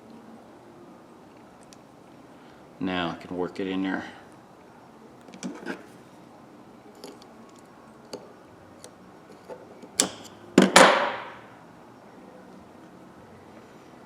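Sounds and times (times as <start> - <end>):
small metal clicks and taps: 7.0 - 10.4
sharp metal snap: 10.0 - 11.4.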